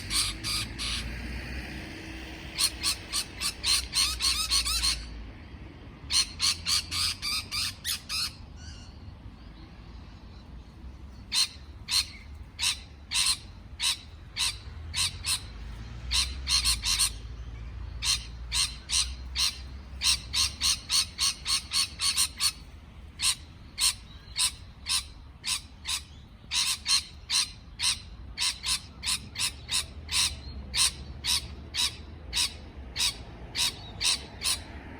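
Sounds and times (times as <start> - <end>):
parrot chirping: 0.0 - 1.1, 2.5 - 5.1, 18.0 - 34.7.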